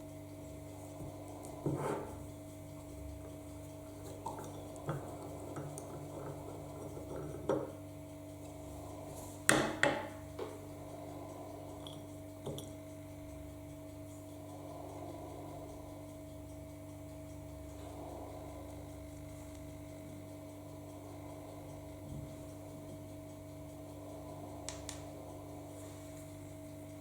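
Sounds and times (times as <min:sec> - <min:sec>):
steady low hum: 0:00.0 - 0:27.0
metal clinks and knocks: 0:05.6 - 0:07.8.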